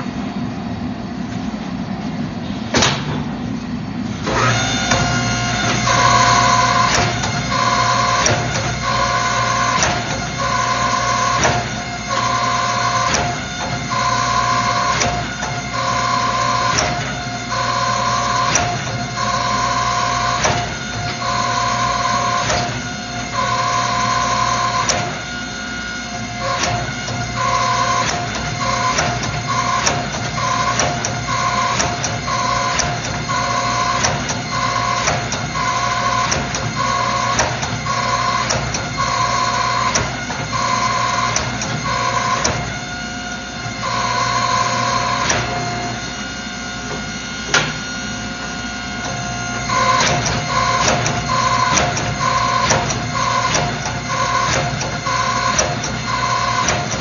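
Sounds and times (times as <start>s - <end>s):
high hydraulic whine: 0.0s - 57.0s
hydraulic pump hum: 0.0s - 57.0s
sharp clicks and knocks: 28.0s - 33.2s, 49.8s - 57.0s.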